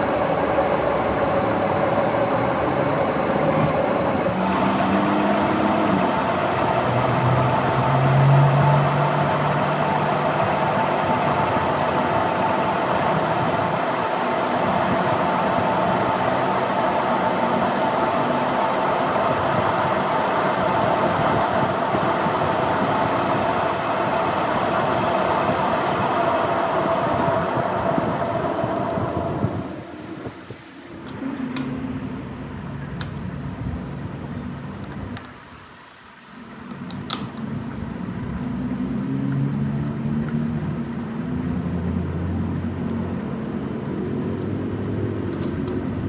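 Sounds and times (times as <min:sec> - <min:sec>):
metal lathe humming and whining: 0:00.0 - 0:31.1.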